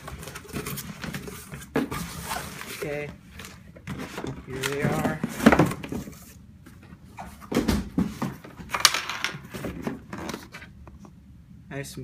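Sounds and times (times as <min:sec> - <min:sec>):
packaging rustling and crinkling: 0:00.0 - 0:06.4.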